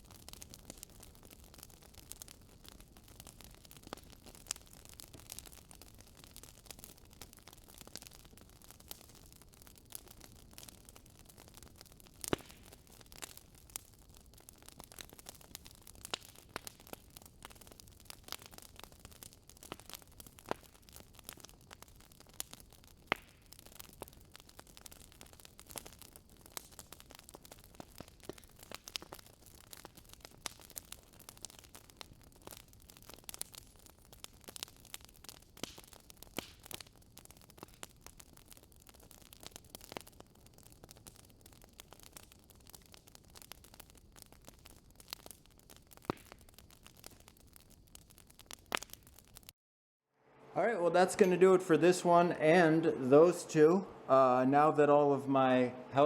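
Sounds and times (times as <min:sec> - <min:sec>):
faint crackling hiss: 0:50.2 - 0:56.0.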